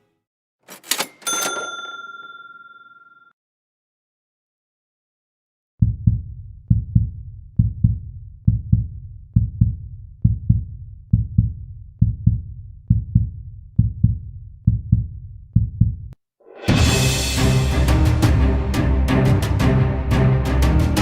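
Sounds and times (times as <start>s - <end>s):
heartbeat-like low thumps: 5.8s - 20.3s.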